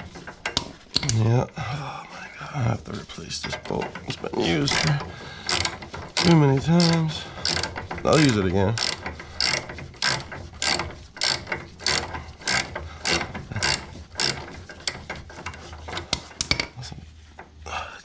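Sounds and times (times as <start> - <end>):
socket ratchet clicking: 4.7 - 15.0.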